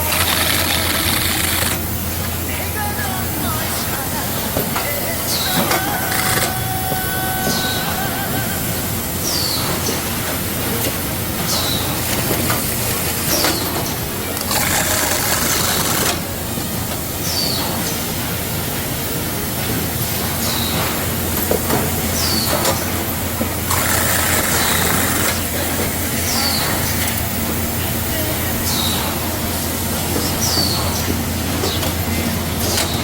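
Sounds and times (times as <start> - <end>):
machinery hum and rattle: 0.0 - 33.0.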